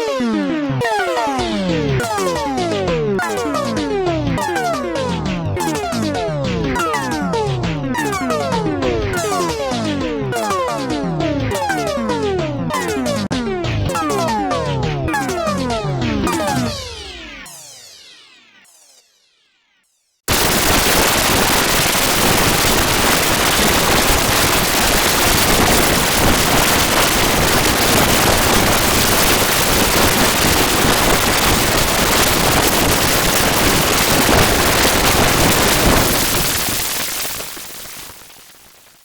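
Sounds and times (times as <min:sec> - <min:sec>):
crackling static noise: 0:20.3 - 0:39.0.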